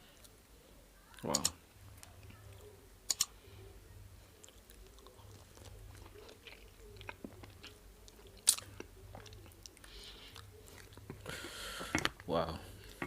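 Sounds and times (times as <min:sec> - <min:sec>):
soft chewing: 0:00.0 - 0:13.0
wet mouth clicks: 0:04.4 - 0:09.8.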